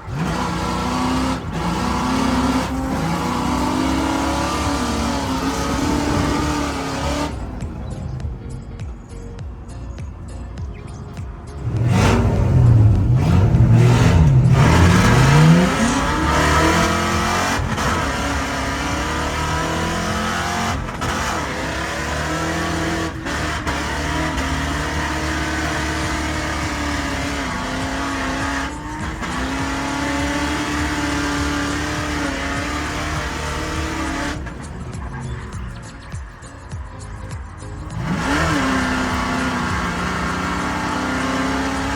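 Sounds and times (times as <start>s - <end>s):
car engine revving hard: 0.0s - 8.6s, 11.6s - 36.4s, 37.8s - 41.9s.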